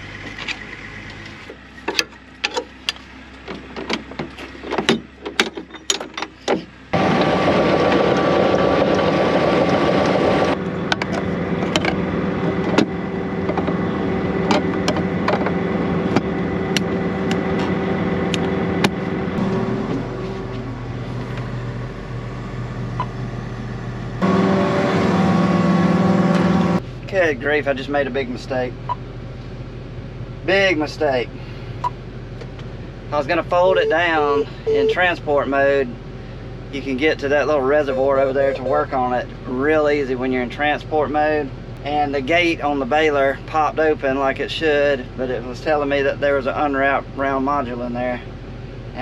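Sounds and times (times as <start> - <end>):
cotton picker machine drone: 7.0 - 26.8, 33.2 - 35.3.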